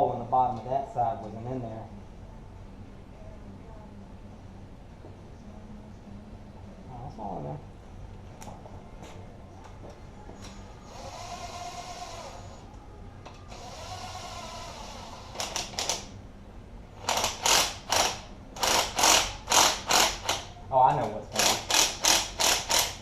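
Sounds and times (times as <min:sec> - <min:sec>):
whirring: 0:10.4 - 0:16.1
hand ratchet clicking: 0:15.3 - 0:16.1, 0:17.0 - 0:20.5, 0:21.3 - 0:23.0.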